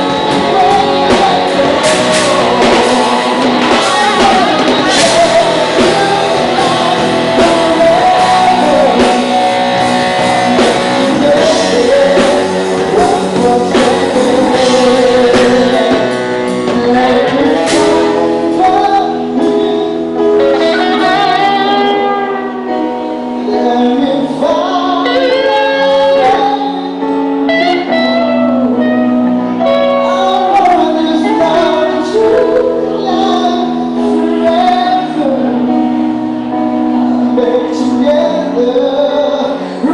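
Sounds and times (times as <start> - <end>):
drum kit hits: 0.0 - 18.8
person singing: 0.0 - 39.9
rock band playing: 0.0 - 39.9.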